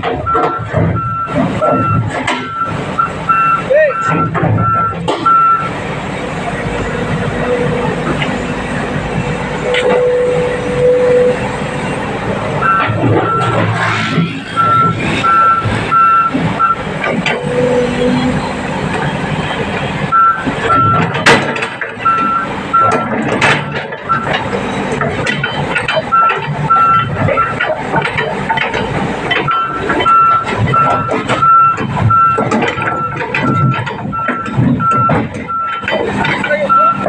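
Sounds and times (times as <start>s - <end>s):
clanking tracks and steel: 0.0s - 37.0s
diesel engine running: 0.0s - 37.0s
excavator travel alarm beeping: 0.1s - 37.0s.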